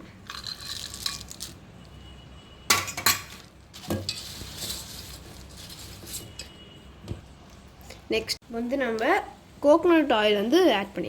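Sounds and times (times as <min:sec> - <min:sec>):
rice rustling: 0:03.7 - 0:06.4.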